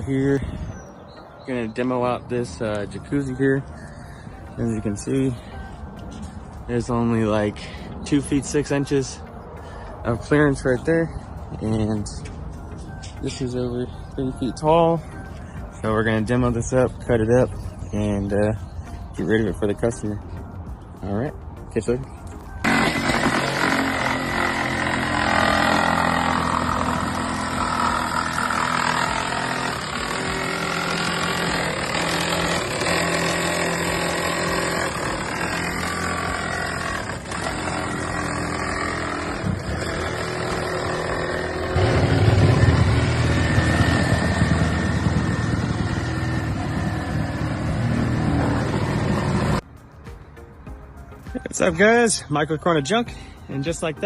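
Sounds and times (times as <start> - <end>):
motor running: 22.6 - 49.6.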